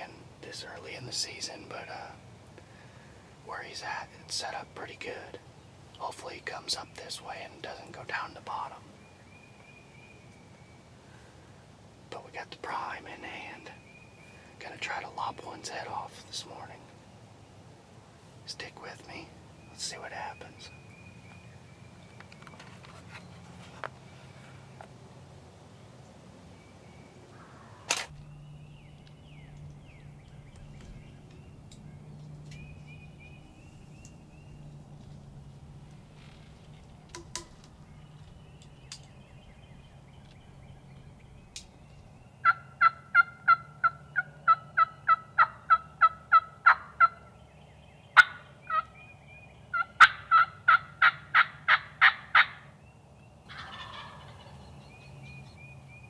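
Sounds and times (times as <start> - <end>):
sharp click: 27.9 - 28.3
turkey yelping: 42.4 - 47.3, 48.2 - 48.9, 49.7 - 52.6, 53.5 - 54.7.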